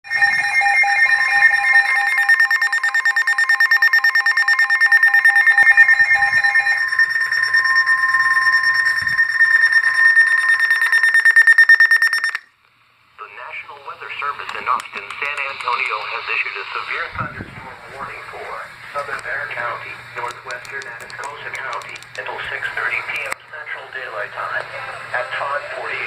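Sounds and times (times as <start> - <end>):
rapid electronic alarm beeping: 0.0 - 12.5
steady low alarm tone: 0.0 - 12.5.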